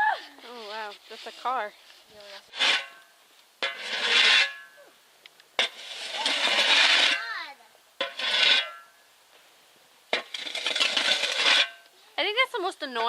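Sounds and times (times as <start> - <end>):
snow shovel scraping pavement: 0.3 - 3.0, 3.6 - 4.7, 5.6 - 8.9, 10.1 - 11.8.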